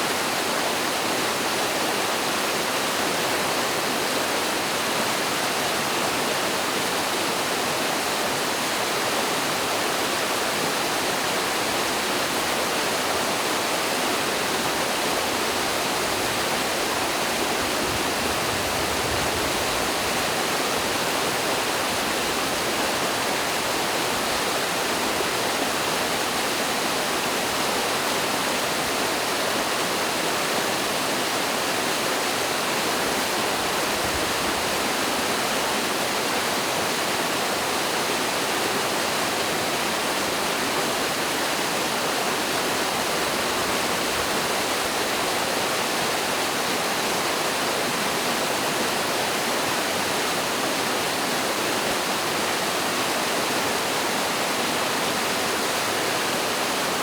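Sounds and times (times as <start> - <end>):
stream rushing over cascades: 0.0 - 57.0.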